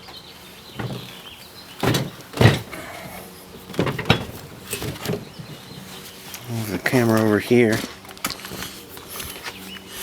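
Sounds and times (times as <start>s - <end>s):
handling knocks and bumps: 0.7s - 1.2s, 1.8s - 2.9s, 3.6s - 5.9s, 6.6s - 9.5s.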